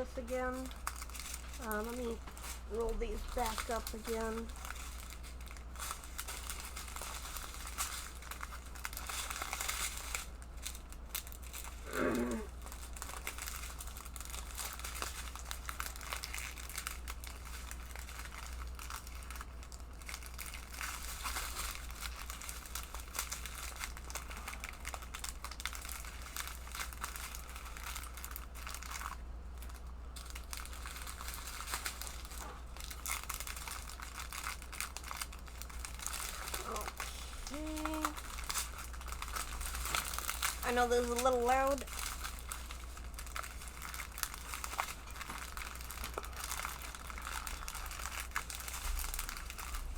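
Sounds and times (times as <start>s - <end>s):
plastic packaging crinkling: 0.0s - 49.9s
short pitched vocal sound: 11.9s - 12.5s.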